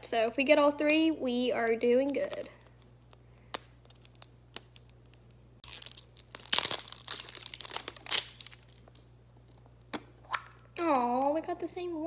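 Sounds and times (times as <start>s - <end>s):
packaging crinkling and tearing: 1.9s - 9.9s
loud packaging rips: 3.5s - 9.0s.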